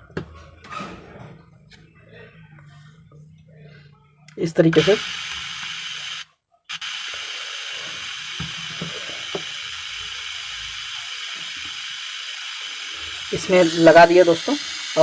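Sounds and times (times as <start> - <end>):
steady speaker hiss: 4.3 - 15.0.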